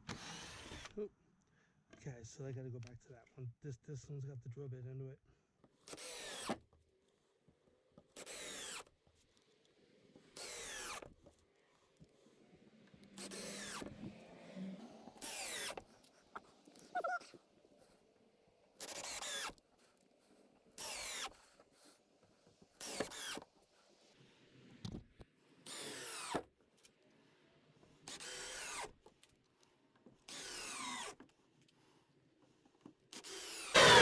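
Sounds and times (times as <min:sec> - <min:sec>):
power drill drilling into wood: 0:00.0 - 0:01.0, 0:05.9 - 0:06.6, 0:08.2 - 0:08.9, 0:10.4 - 0:11.0, 0:13.2 - 0:13.9, 0:15.2 - 0:15.8, 0:25.7 - 0:26.4, 0:33.2 - 0:34.0.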